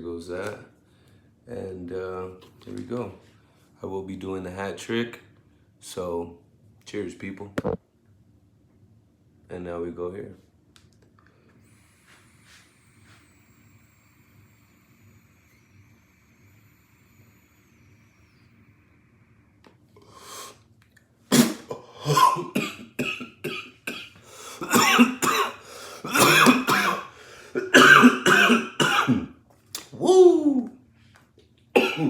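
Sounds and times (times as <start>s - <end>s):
breathy exhale: 20.0s - 20.6s, 25.6s - 26.1s, 27.1s - 27.6s
throat clearing: 21.3s - 25.5s, 26.1s - 27.0s, 31.8s - 32.0s
man coughing hard: 21.3s - 29.3s, 31.8s - 32.0s.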